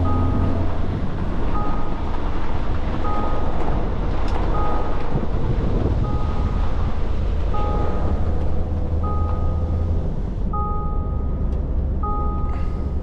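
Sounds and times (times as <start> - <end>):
two-note electronic beep: 0.0 - 0.7, 1.5 - 2.1, 3.1 - 3.6, 4.6 - 5.1, 6.0 - 12.6
tyre and wind noise: 0.0 - 10.6
truck engine rumble: 0.0 - 13.0.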